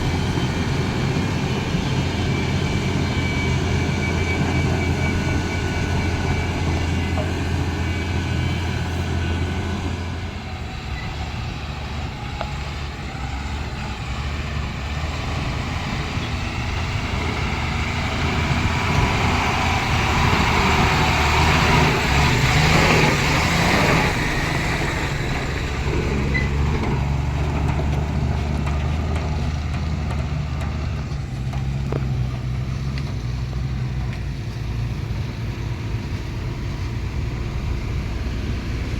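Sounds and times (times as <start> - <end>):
broad rushing noise: 0.0 - 29.7
heavy diesel engine running: 0.0 - 38.9.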